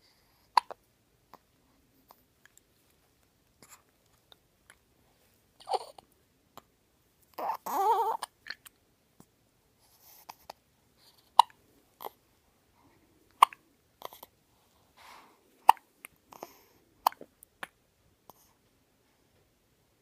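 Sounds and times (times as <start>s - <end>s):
baby hiccuping: 0.4s - 0.8s, 5.6s - 6.0s, 7.4s - 8.7s, 11.2s - 12.2s, 13.4s - 14.3s, 15.6s - 17.7s.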